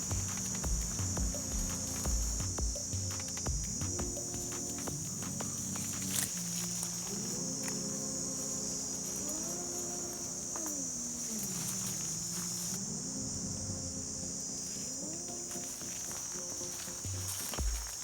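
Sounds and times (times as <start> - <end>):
insect chorus: 0.0 - 18.0.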